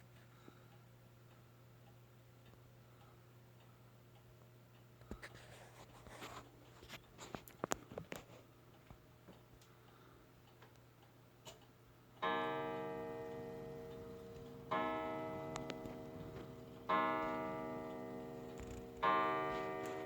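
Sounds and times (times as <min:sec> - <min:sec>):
wall clock striking: 0:12.2 - 0:20.0.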